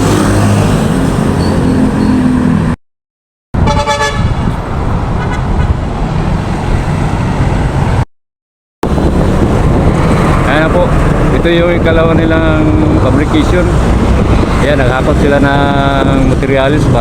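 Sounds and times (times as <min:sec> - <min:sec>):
horn sounding: 0:03.6 - 0:04.6.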